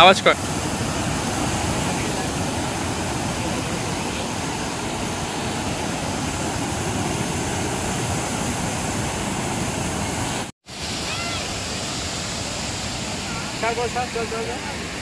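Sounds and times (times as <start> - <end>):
waterfall roaring: 0.0 - 15.0.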